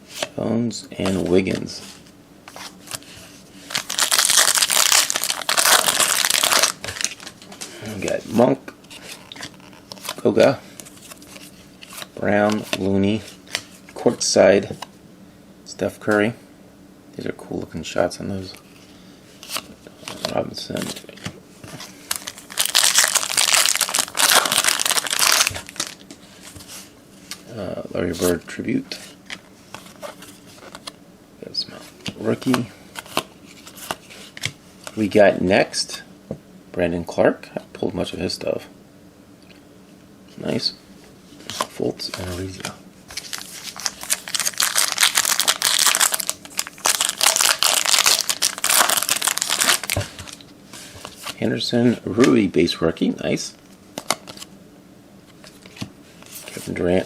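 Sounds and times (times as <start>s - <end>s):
wrapper crinkling: 3.7s - 7.4s, 22.0s - 26.1s, 43.1s - 50.4s.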